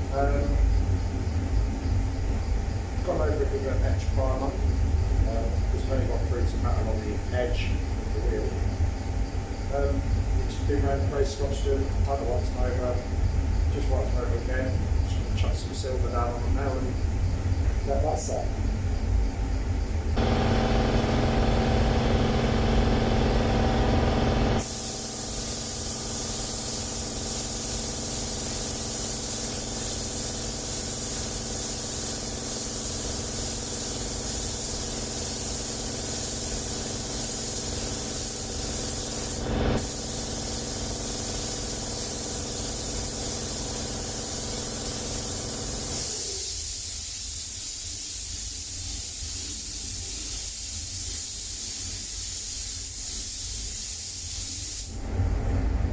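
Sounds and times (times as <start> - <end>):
machine hum: 16.9 - 46.2
spray paint hissing: 20.2 - 55.0.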